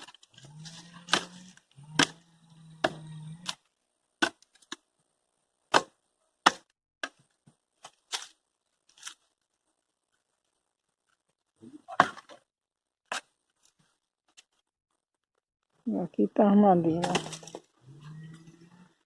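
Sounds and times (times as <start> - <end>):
hand tool chopping dry wood: 0.0 - 2.2, 2.8 - 3.6, 5.7 - 7.2.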